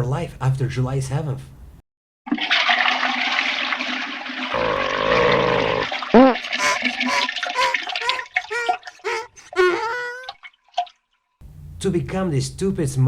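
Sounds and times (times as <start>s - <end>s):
toilet flushing: 2.3s - 9.5s
squeaky chirps sliding in pitch: 6.6s - 10.3s.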